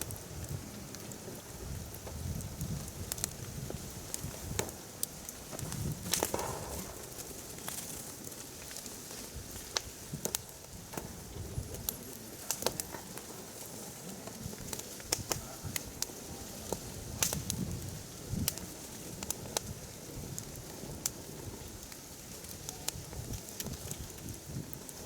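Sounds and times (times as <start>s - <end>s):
firewood crackling and popping: 0.0s - 25.0s
low rustle of flame: 0.0s - 25.0s.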